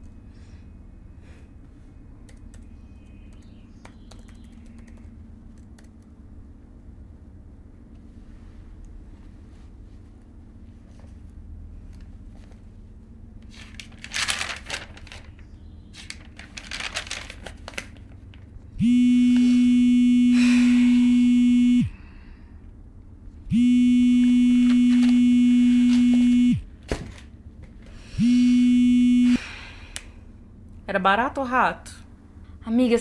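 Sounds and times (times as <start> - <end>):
rustling and crinkling: 8.0 - 18.7
buzzing phone ring tone: 18.8 - 22.0, 23.5 - 26.6, 28.2 - 29.5.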